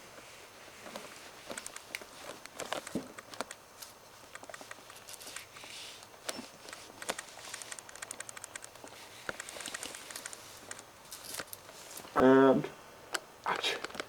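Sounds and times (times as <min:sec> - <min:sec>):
rustling: 0:00.0 - 0:12.3
light clicks and taps: 0:01.5 - 0:11.7.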